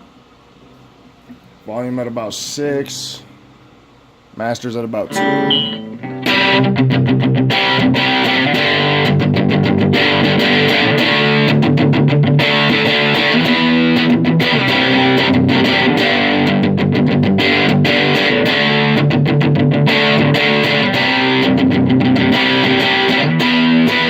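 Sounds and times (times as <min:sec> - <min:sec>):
electric guitar chords and notes: 0:05.1 - 0:24.0.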